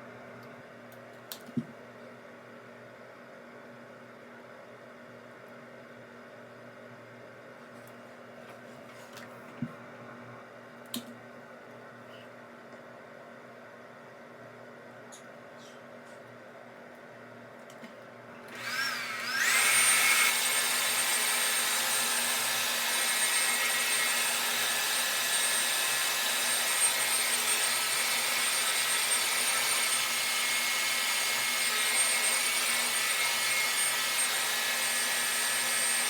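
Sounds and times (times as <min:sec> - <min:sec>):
blow dryer running: 0:18.4 - 0:36.0.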